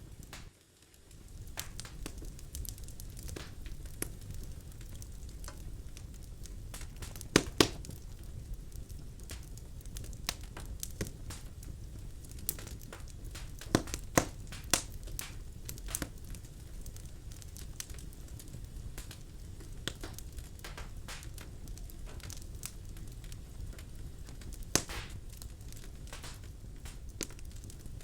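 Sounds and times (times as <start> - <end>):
fire crackling and popping: 0.0 - 28.0
fire rumbling: 0.0 - 28.0.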